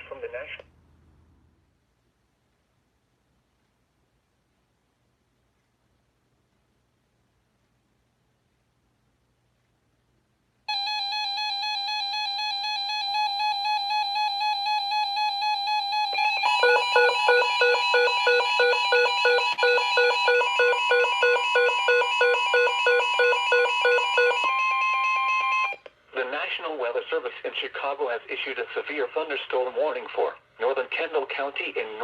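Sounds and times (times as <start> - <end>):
alternating low-high beeping: 10.7 - 25.8
buzzy pulsing alarm tone: 10.7 - 25.8
steady alarm tone: 10.7 - 25.9.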